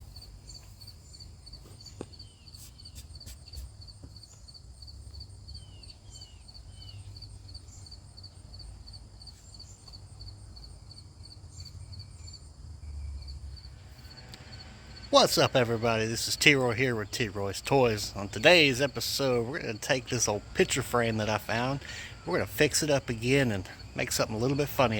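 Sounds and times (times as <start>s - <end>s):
falling bird calls: 0.0s - 8.0s
insects chirping: 0.0s - 24.9s.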